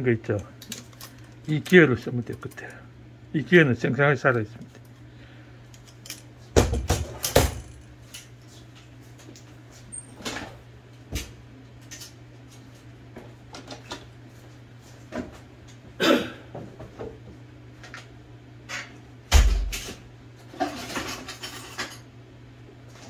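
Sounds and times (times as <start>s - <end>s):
steady low hum: 0.0s - 23.0s
small metal parts clicking: 5.7s - 6.2s.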